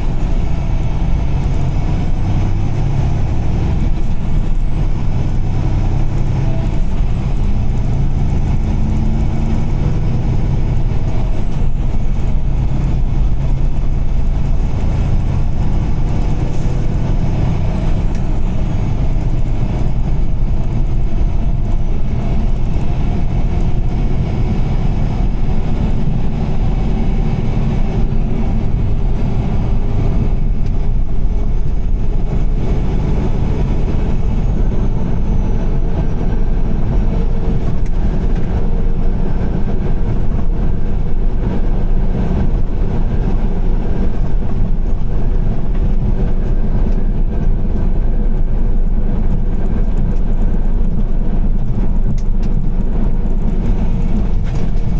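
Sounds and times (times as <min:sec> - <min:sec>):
car engine running: 0:00.0 - 0:54.9
tyres on wet road: 0:00.0 - 0:54.9.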